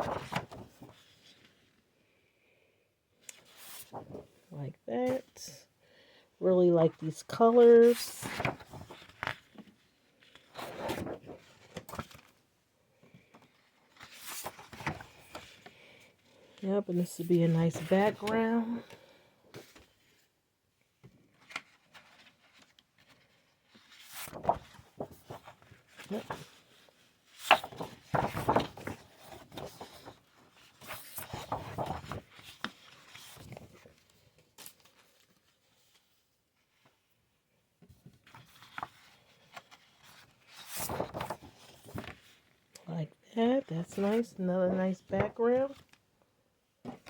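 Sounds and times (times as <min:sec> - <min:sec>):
paper sheets rustling: 0:00.0 - 0:01.7, 0:03.3 - 0:04.4, 0:06.9 - 0:12.4, 0:13.3 - 0:15.8, 0:21.3 - 0:37.0, 0:37.9 - 0:42.6, 0:43.9 - 0:46.0.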